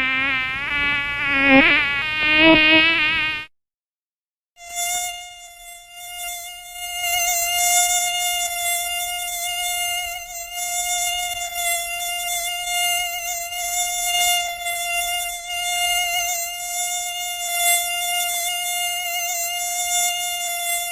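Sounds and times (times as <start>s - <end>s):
mosquito wing whine: 0.0s - 3.5s, 4.6s - 20.9s.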